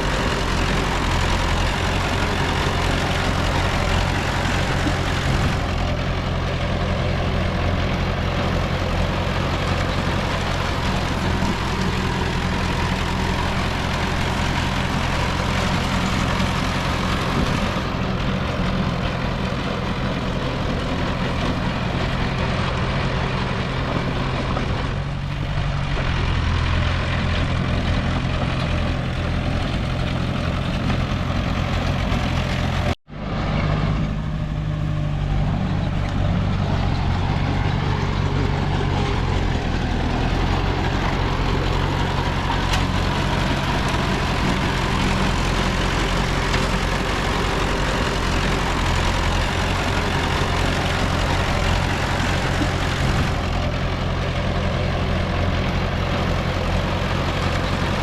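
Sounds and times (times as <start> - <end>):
heavy machinery diesel engine: 0.0 - 58.0.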